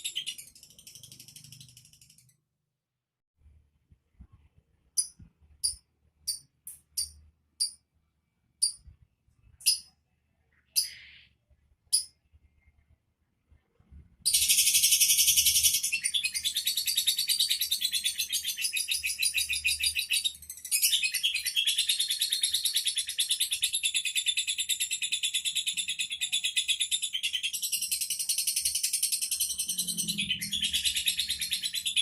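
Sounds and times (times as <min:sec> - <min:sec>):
lovebird chattering trill: 0:10.7 - 0:11.2.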